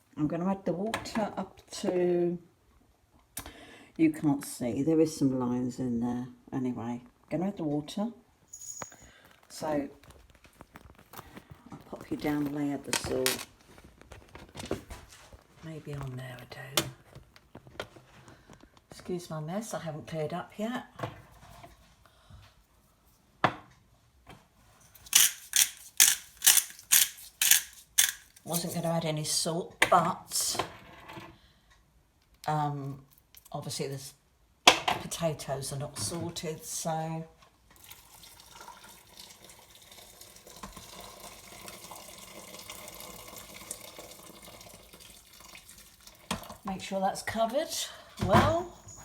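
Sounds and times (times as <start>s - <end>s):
salt grinder grinding: 25.0s - 28.7s
water running into pot: 37.8s - 46.6s.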